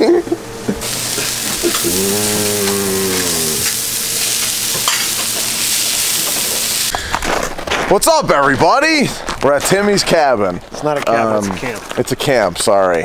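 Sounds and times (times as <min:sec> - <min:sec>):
food frying sizzle: 0:00.7 - 0:07.0
low drawn-out voice-like call: 0:01.7 - 0:03.8.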